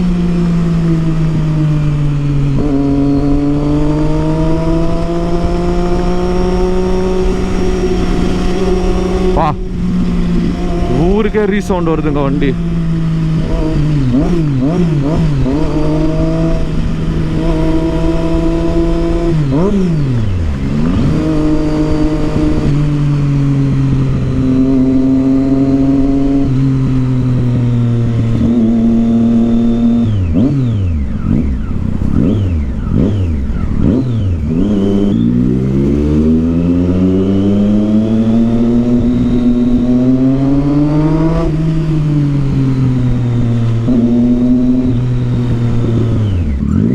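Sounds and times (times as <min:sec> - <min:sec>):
motorcycle engine revving: 0:00.0 - 0:46.9.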